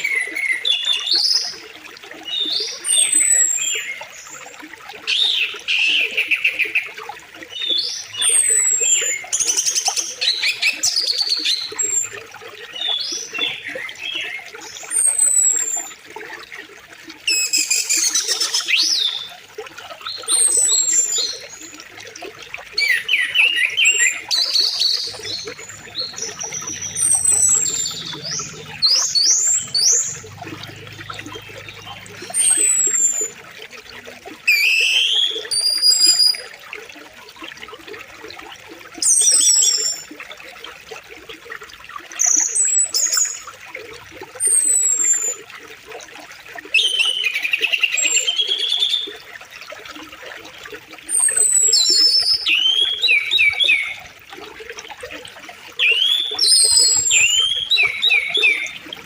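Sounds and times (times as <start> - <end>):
flowing river water: 0.0 - 59.0
songbirds singing: 5.1 - 16.0, 22.8 - 36.5, 51.2 - 54.2, 55.8 - 59.0.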